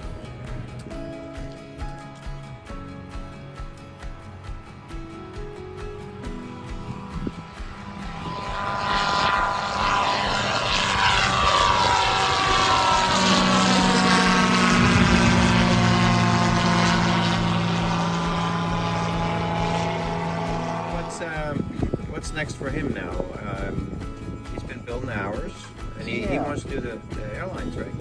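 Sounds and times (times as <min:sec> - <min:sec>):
propeller airplane passing: 0:00.0 - 0:28.0
steady low drone: 0:00.0 - 0:28.0.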